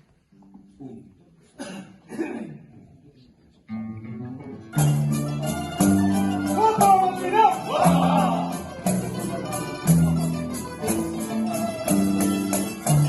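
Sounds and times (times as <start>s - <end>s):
plucked string ensemble strumming: 3.7s - 13.0s
tambourine shaking: 4.8s - 13.0s.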